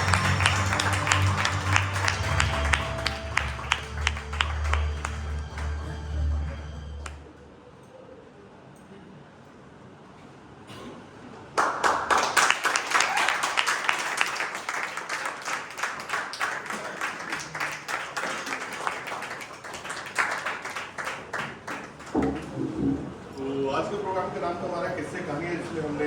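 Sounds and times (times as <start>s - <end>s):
audience clapping: 0.0s - 7.2s, 11.6s - 22.9s.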